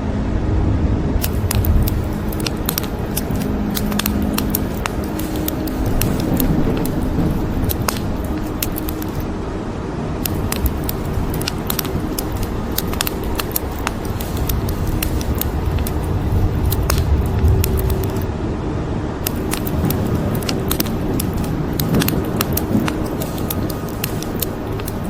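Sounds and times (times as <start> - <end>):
thunder rumble: 0.2 - 9.5
wood fire crackling and popping: 1.2 - 9.3, 10.2 - 18.3, 19.2 - 25.0
steady rain: 1.2 - 25.0.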